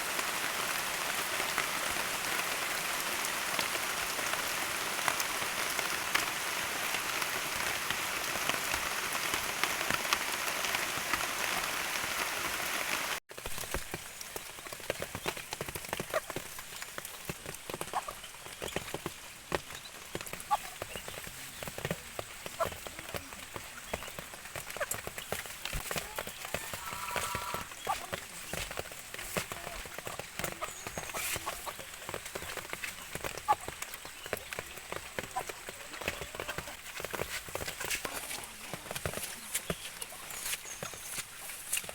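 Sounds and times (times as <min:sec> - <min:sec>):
steady rain falling: 0:00.0 - 0:41.9
short animal calls: 0:26.0 - 0:28.1.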